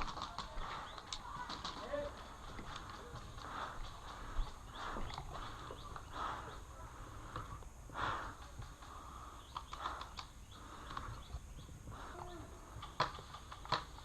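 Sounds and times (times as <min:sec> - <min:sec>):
sharp clicks: 0:08.2 - 0:11.3.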